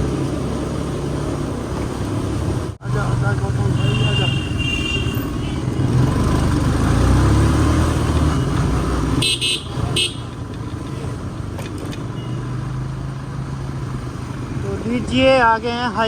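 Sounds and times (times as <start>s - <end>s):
motorcycle engine: 0.0s - 16.0s
road noise: 0.0s - 16.0s
vehicle horn toots: 3.8s - 5.9s, 9.2s - 10.3s.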